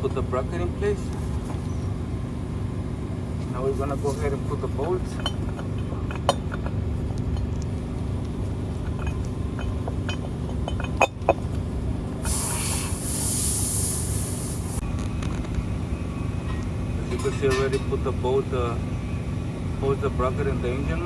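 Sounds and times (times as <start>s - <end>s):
metal clinks of tools: 8.8s - 11.4s
hiss: 12.2s - 14.8s.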